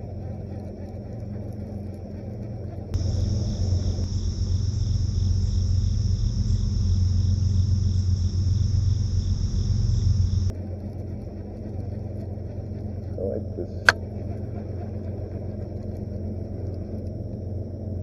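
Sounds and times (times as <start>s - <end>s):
wind buffeting microphone: 1.2s - 4.1s.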